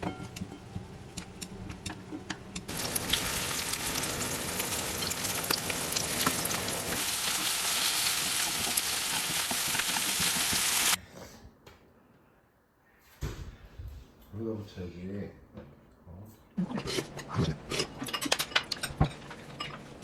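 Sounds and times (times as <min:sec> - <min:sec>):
food sizzling in hot oil: 0:02.7 - 0:11.0.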